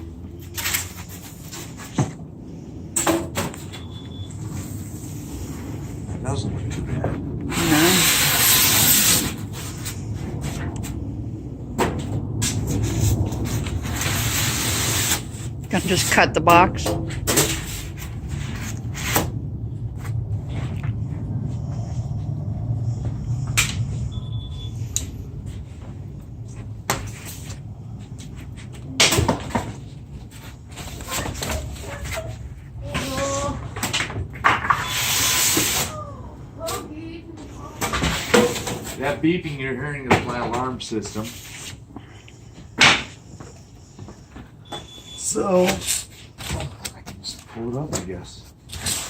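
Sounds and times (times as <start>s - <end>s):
knocks and scrapes: 0.4s - 2.3s, 4.5s - 24.1s, 24.7s - 35.9s, 37.8s - 41.8s
sharp scrape: 7.5s - 10.7s, 12.4s - 16.0s, 17.3s - 19.3s, 34.6s - 36.0s.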